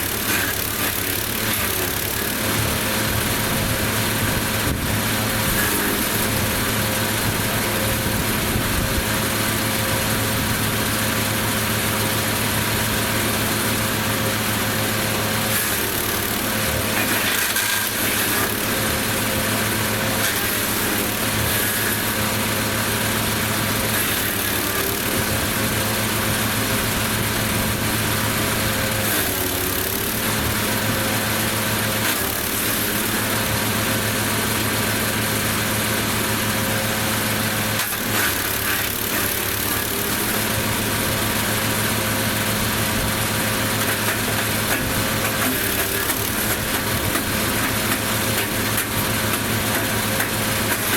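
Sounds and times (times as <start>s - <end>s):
wood chipper engine running: 0.0s - 50.9s.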